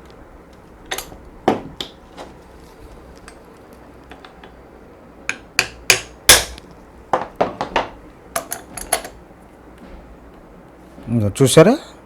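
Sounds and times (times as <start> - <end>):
small hammer tapping metal: 5.3 - 6.6.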